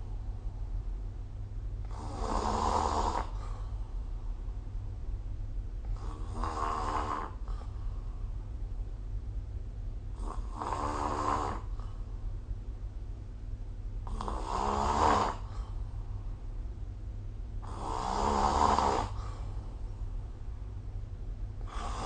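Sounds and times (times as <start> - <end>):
steady low hum: 0.0 - 22.0
person snoring: 1.8 - 3.4, 6.0 - 7.7, 10.2 - 11.9, 14.0 - 15.6, 17.6 - 19.4, 21.6 - 22.0.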